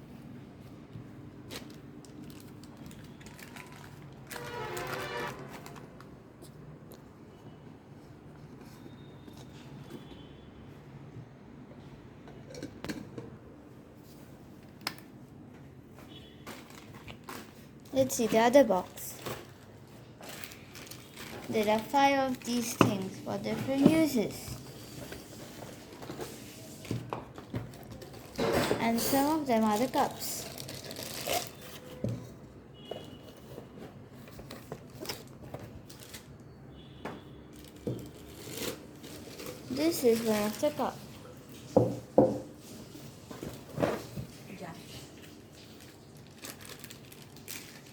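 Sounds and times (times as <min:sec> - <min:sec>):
packaging rustling: 0:01.4 - 0:06.2, 0:16.5 - 0:32.0, 0:33.5 - 0:36.3, 0:37.6 - 0:41.0, 0:45.2 - 0:47.9.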